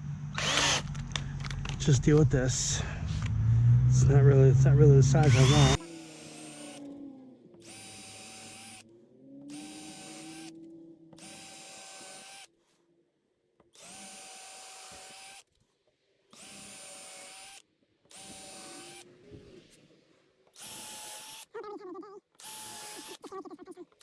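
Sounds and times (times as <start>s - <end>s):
power drill whining: 0.0s - 1.8s, 5.1s - 12.5s, 13.7s - 15.5s, 16.3s - 19.6s, 20.4s - 21.5s, 22.3s - 23.3s.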